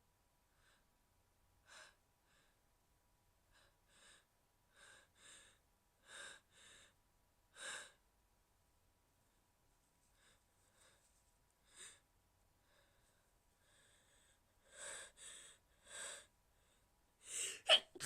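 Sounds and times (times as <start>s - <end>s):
woman gasping and sniffing: 17.3s - 18.0s.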